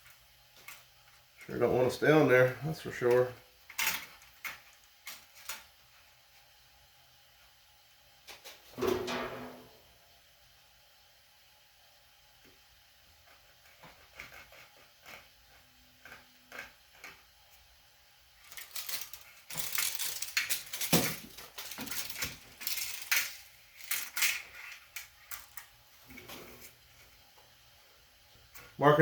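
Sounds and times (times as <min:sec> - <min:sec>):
metal tools clinking and rattling: 0:18.4 - 0:24.5.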